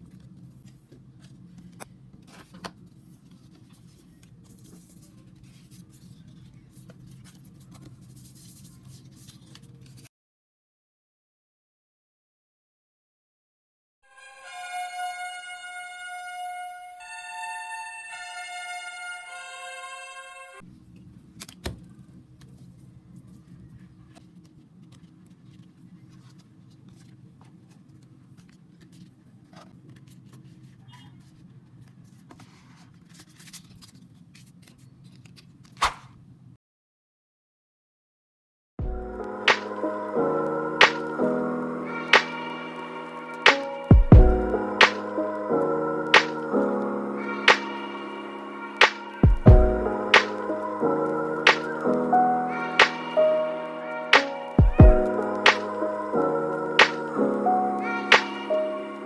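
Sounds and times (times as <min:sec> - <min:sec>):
paper and plastic rustling: 0:00.0 - 0:10.1, 0:22.4 - 0:35.8
background music: 0:38.8 - 0:59.0.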